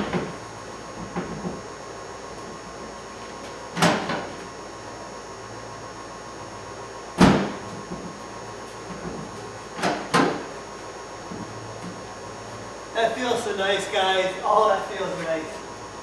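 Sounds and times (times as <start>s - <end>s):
metallic tailgate clunks: 3.4s - 4.4s, 7.2s - 8.0s, 9.8s - 10.5s.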